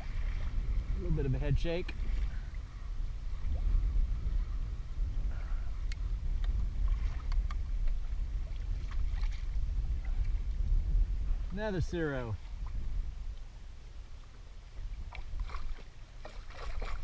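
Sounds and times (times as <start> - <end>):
water sloshing against kayak: 0.0 - 1.0, 5.7 - 11.6, 12.4 - 17.0
wind rumbling on microphone: 0.0 - 17.0.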